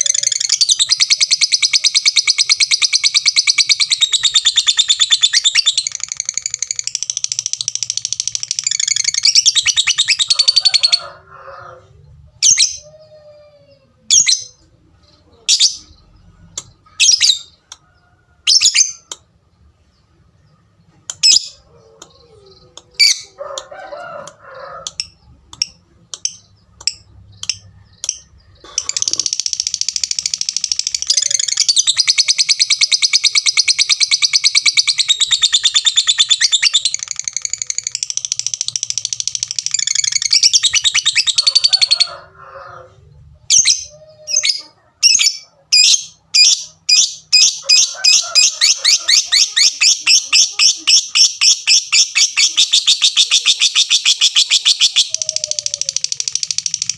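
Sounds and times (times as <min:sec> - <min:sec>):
lovebird chattering trill: 0:00.0 - 0:11.0, 0:24.8 - 0:42.2, 0:43.5 - 0:56.9.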